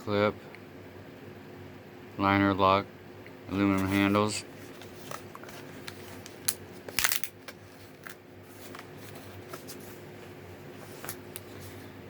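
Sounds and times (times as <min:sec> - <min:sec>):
plastic packaging clicks and crinkles: 0:04.8 - 0:09.7.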